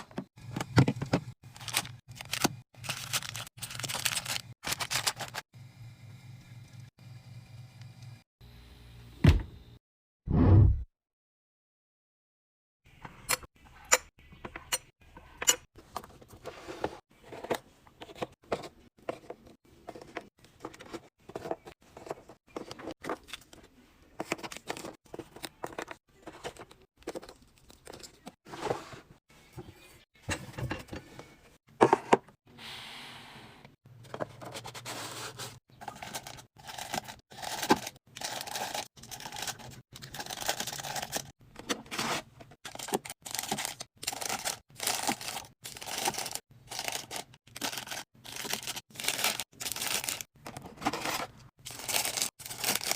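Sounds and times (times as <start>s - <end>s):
plastic crinkling: 1.5s - 5.4s.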